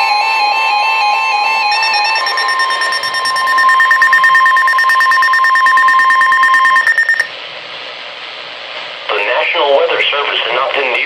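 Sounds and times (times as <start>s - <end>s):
loud steady alarm tone: 0.0s - 7.3s
faint radio hiss: 9.0s - 11.0s.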